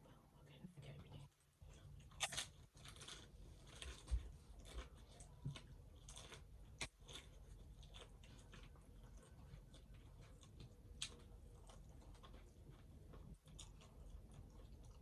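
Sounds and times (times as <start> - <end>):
taco crunching while chewed: 1.6 - 15.0.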